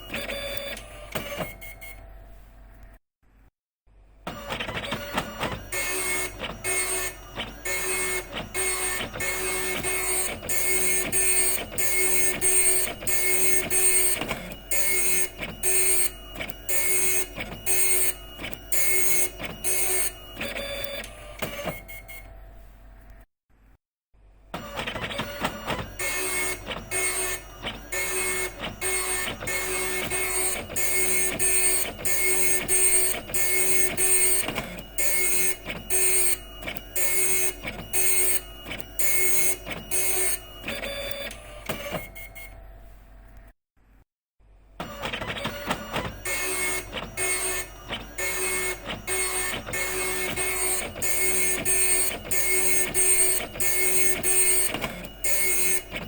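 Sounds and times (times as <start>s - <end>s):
dot matrix printer buzzing: 0.0s - 1.8s, 4.3s - 22.2s, 24.6s - 42.6s, 44.8s - 56.0s.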